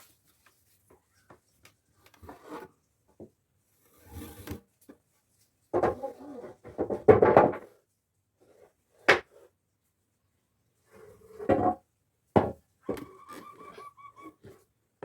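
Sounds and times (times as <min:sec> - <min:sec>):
wooden knocks and clunks: 0:06.6 - 0:07.7.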